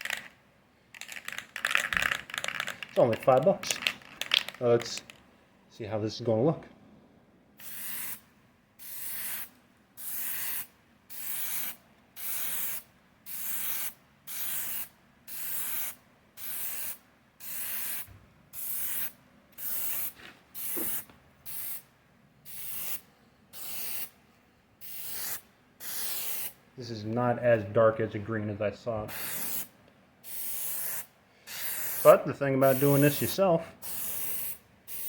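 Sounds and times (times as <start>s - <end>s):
spray paint can hissing: 7.6s - 8.2s, 8.8s - 21.9s, 22.5s - 23.0s, 23.6s - 24.1s, 24.8s - 26.6s, 29.1s - 35.0s.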